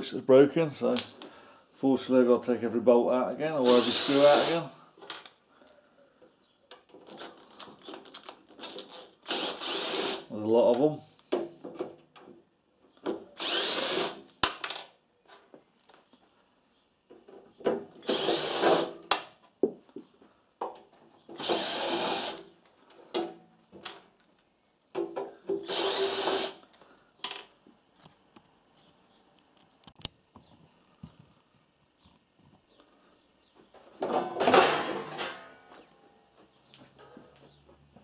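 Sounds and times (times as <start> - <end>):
power drill running: 3.5 - 4.8, 8.6 - 10.3, 13.4 - 14.2, 18.0 - 19.0, 21.4 - 22.5, 25.6 - 26.6.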